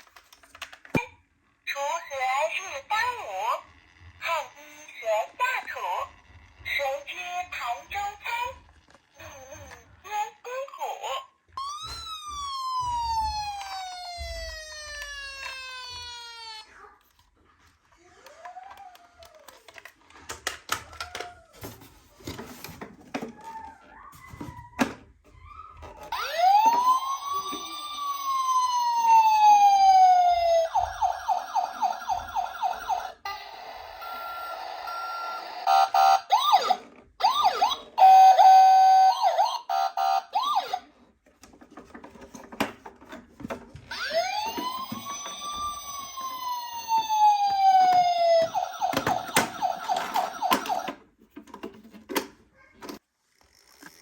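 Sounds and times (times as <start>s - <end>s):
plastic clicks and clatter: 0.0s - 1.2s, 17.0s - 25.1s, 41.0s - 47.1s, 47.7s - 53.0s
toy ambulance electronic siren: 6.5s - 9.9s, 11.6s - 16.7s, 25.8s - 41.0s, 43.8s - 51.7s.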